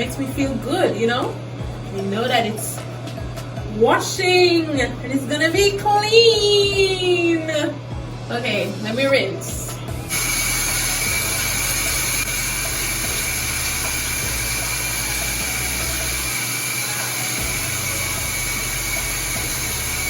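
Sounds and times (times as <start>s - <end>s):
running water rushing: 10.1s - 20.0s
thin high whistle: 10.1s - 20.0s.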